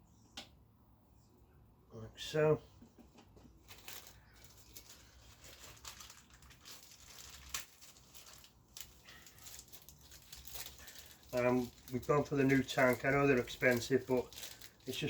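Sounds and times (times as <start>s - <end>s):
packaging crinkling and rustling: 3.5s - 15.0s.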